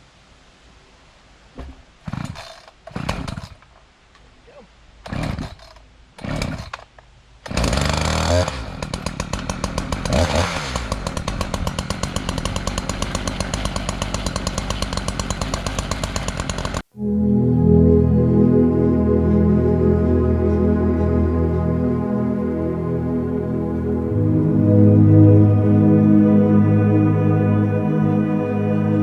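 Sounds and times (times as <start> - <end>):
chainsaw engine running: 9.3 - 16.8.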